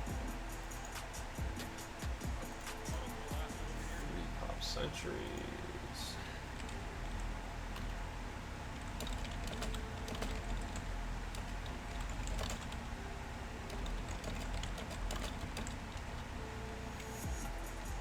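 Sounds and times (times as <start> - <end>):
computer keyboard typing: 0.0 - 4.0, 6.4 - 8.1, 8.7 - 13.0, 13.6 - 18.0.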